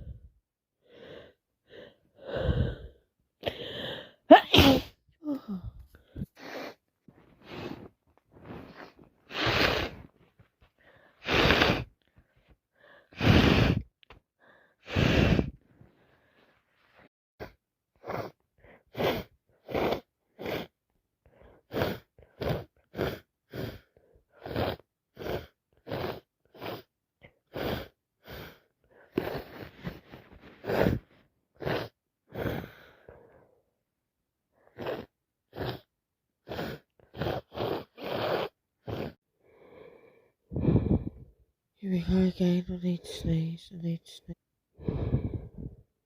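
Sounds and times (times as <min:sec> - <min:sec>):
person sneezing and gasping: 0:02.2 - 0:06.8, 0:07.4 - 0:10.2, 0:11.2 - 0:12.0, 0:13.0 - 0:13.9, 0:14.8 - 0:15.6.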